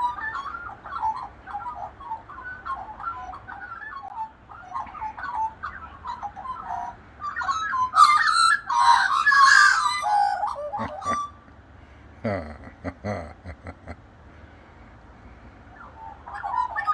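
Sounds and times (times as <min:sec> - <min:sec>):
magpies carolling: 0:00.0 - 0:11.6, 0:12.2 - 0:14.0, 0:15.3 - 0:16.9.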